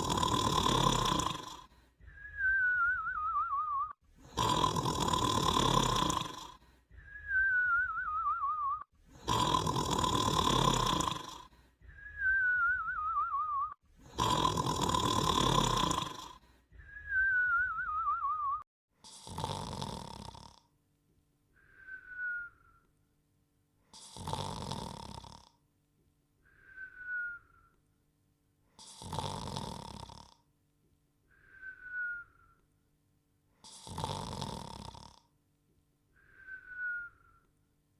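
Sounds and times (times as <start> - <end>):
cartoon snoring with whistle: 0.0 - 20.7, 21.6 - 22.9, 23.9 - 25.6, 28.8 - 30.5, 31.3 - 32.7, 33.6 - 35.3, 36.2 - 37.5
wavering whistle: 2.0 - 4.0, 7.0 - 8.8, 11.9 - 13.8, 16.8 - 18.6, 21.6 - 22.9, 26.5 - 27.8, 31.4 - 32.6, 36.2 - 37.5.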